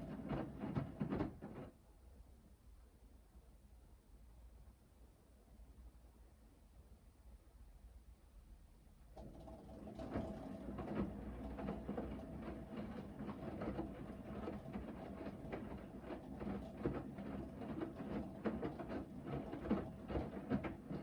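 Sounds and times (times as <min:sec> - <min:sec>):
washing machine motor humming: 0:09.3 - 0:21.0.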